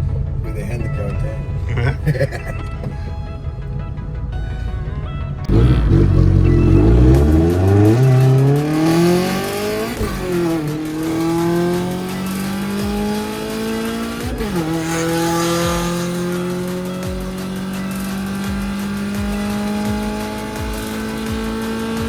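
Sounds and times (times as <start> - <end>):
car engine accelerating hard: 5.4 - 22.0.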